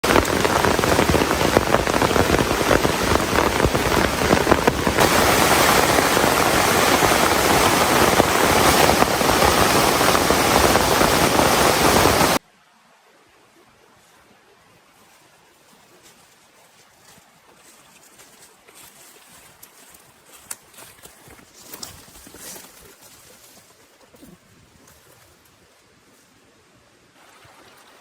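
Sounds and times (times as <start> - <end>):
heavy rain pouring: 0.0 - 12.4.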